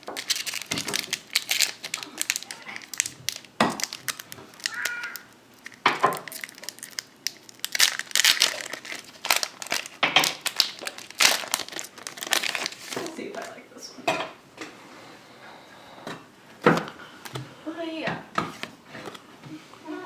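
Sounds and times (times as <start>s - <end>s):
foil wrappers crinkling: 0.0s - 13.6s.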